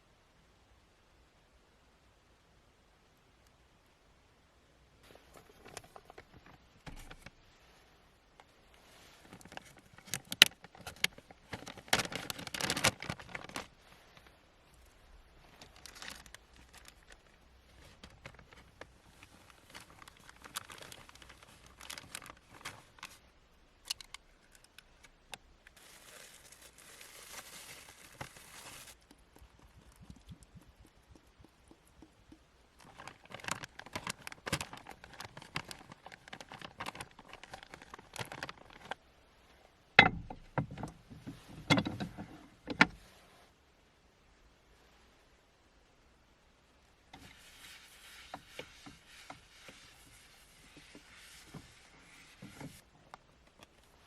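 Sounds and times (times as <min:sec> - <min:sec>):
crinkling and rustling: 0:05.0 - 0:43.5, 0:47.1 - 0:54.0
steady hiss: 0:39.0 - 0:54.0.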